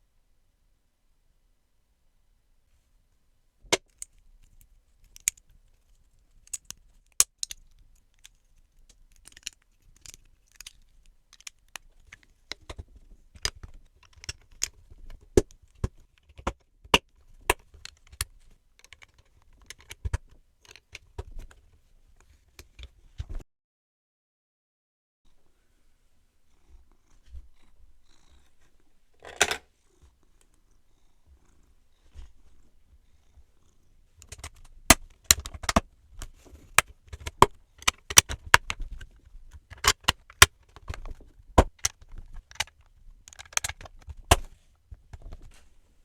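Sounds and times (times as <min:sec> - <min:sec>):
plastic bricks clicking: 0:06.4 - 0:11.8, 0:29.2 - 0:29.6, 0:41.8 - 0:44.4.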